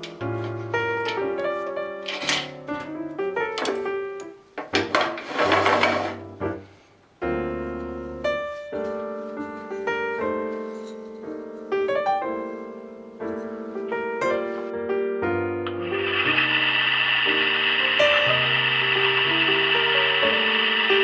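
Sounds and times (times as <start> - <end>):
slow piano melody: 0.0 - 21.0.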